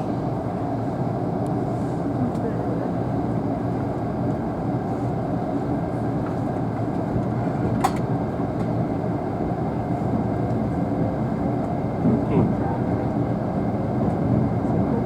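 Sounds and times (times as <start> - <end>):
train cabin rumble: 4.8 - 15.0.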